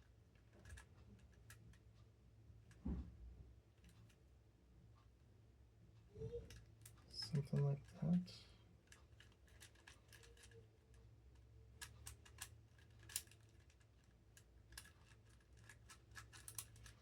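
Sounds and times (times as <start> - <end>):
plastic puzzle clicking: 9.1 - 10.6, 11.8 - 13.8, 14.7 - 17.0.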